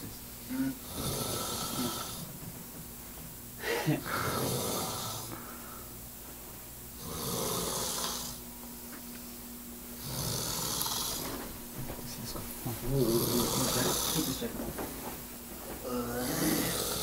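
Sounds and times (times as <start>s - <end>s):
man snoring heavily: 0.5s - 2.3s, 3.6s - 5.5s, 7.0s - 8.4s, 10.0s - 11.3s, 13.0s - 14.4s, 15.8s - 17.0s.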